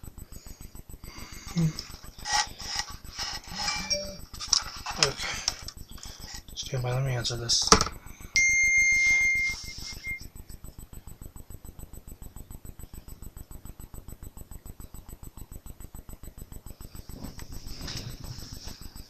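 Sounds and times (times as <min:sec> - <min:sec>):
high electronic beep: 0:03.6 - 0:04.3, 0:08.4 - 0:10.2
faint rapid ticking: 0:10.3 - 0:17.5.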